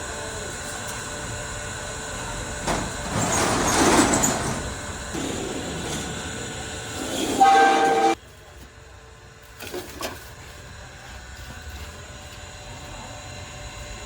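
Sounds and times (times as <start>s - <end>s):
street noise: 0.0s - 14.0s
vehicle horn blast: 7.3s - 8.2s.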